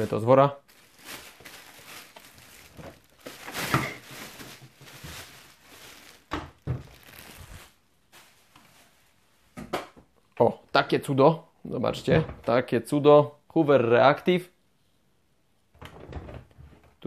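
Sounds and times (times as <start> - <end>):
packaging bag rustling: 0.0 - 9.1.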